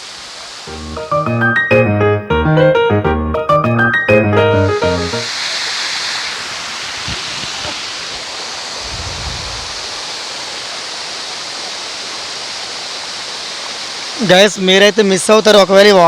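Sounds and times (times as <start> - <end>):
background music: 0.7 - 5.3
waterfall roaring: 9.6 - 14.7.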